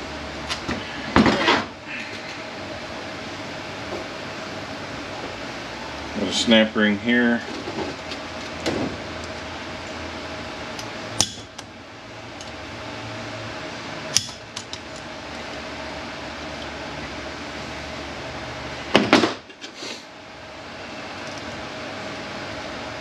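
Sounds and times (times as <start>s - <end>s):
steady shop hum: 0.0s - 23.0s.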